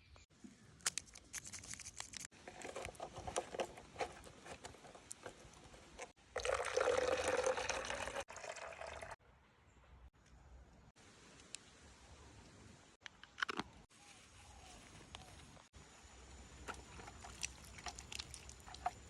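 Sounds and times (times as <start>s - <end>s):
liquid pouring and splashing: 6.1s - 9.2s.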